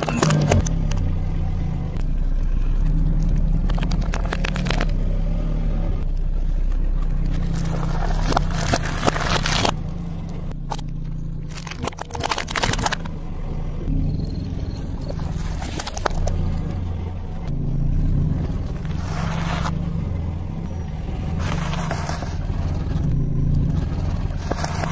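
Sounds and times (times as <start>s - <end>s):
car engine humming: 0.0s - 24.9s
tyre crushing objects: 7.2s - 9.8s.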